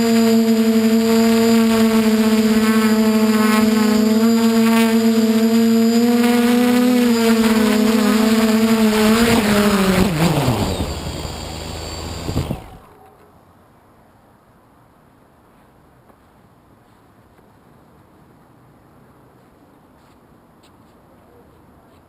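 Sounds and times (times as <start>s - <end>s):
drone propellers whining: 0.0s - 13.2s.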